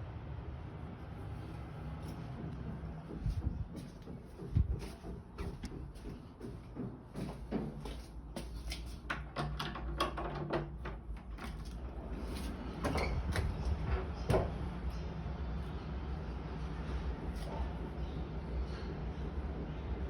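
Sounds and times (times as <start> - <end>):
knocks and bangs: 2.4 - 7.8.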